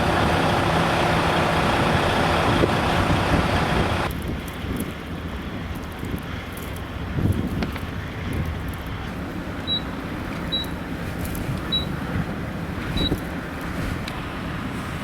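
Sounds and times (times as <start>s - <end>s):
vehicle road rumble: 0.0s - 15.0s
wind noise: 0.0s - 15.0s
short high-pitched beeps: 9.7s - 9.9s, 10.5s - 10.7s, 11.7s - 11.9s.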